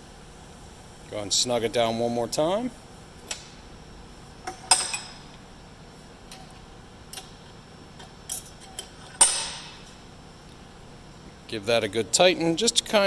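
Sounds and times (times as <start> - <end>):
sharp metallic clanks: 4.5 - 5.3, 8.3 - 10.0.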